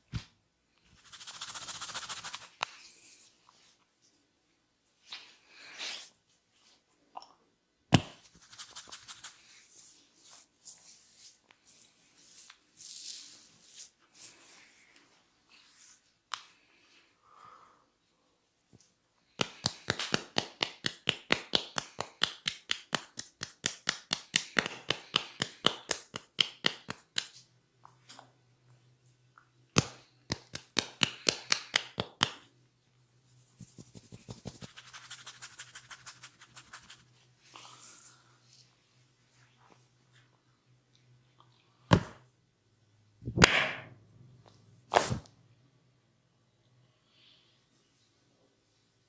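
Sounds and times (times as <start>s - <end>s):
soft rubbing: 33.2s - 40.2s.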